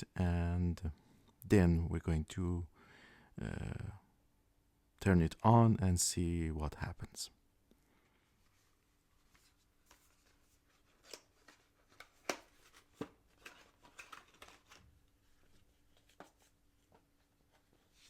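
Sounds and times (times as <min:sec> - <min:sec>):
faint clicks and taps of packaging: 0:09.2 - 0:17.7.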